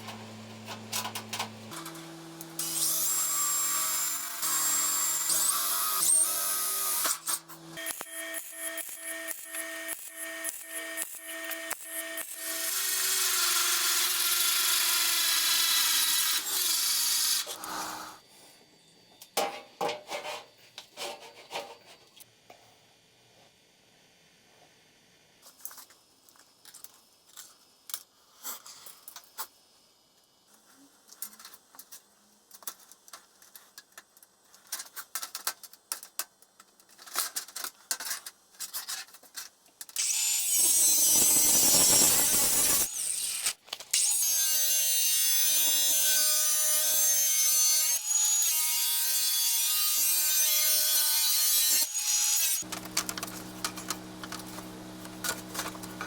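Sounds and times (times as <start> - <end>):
electric power tool whining: 52.6 - 56.0.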